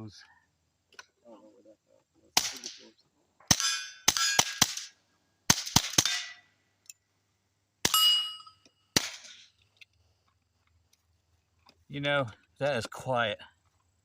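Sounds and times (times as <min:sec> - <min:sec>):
suppressed pistol shots: 0:02.4 - 0:02.8, 0:03.5 - 0:04.9, 0:05.5 - 0:06.4, 0:09.0 - 0:09.4
brief metallic ring: 0:07.9 - 0:08.7.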